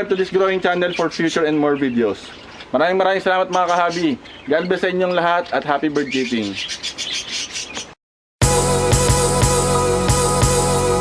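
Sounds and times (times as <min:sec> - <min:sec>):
budgerigars chirping: 0:00.0 - 0:08.0
music with drum beat: 0:08.4 - 0:11.0.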